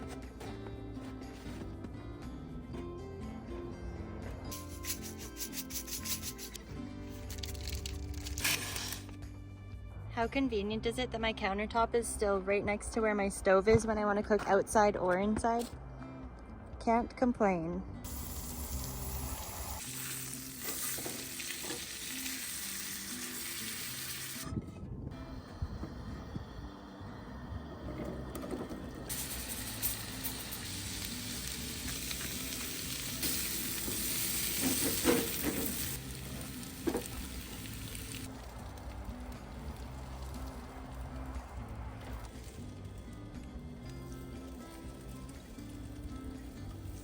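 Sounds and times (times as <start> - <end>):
background music with held notes: 0.0 - 13.6, 19.8 - 47.0
steak sizzling in a pan: 18.1 - 24.4, 29.1 - 38.3.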